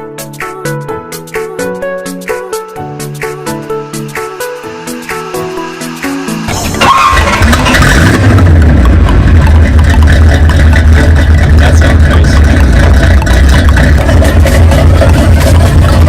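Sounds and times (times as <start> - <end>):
car engine low rumble: 5.7 - 16.0.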